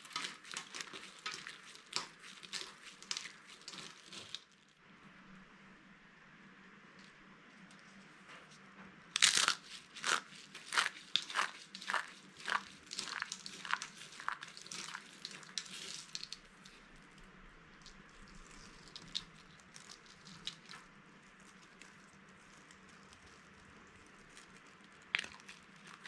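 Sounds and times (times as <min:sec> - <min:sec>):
soap crunching: 0:00.0 - 0:04.6, 0:09.2 - 0:17.1, 0:17.8 - 0:26.0
faint crackles: 0:00.0 - 0:04.8, 0:06.9 - 0:26.0.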